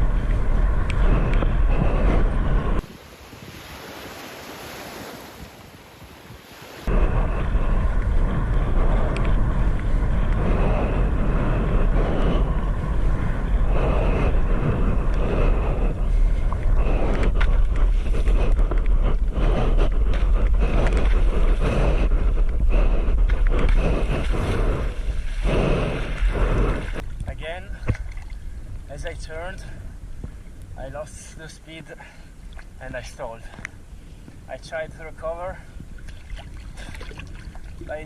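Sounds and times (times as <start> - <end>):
wind rumble on microphone: 0.0 - 38.0
water rushing and splashing: 2.8 - 6.9.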